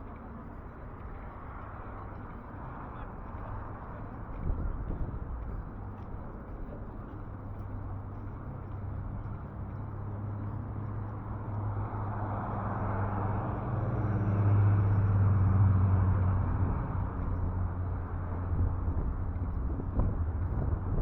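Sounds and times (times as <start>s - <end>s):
tyre noise on road: 0.0s - 21.0s
vehicle engine hum passing: 0.0s - 21.0s.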